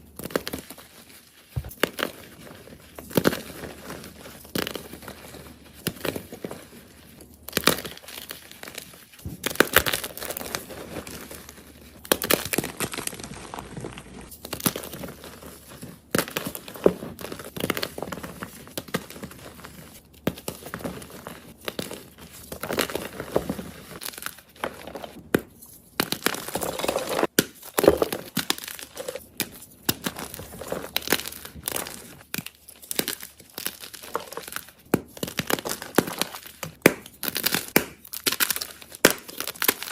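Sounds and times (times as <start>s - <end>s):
chalk crunching and crumbling: 0.1s - 39.9s.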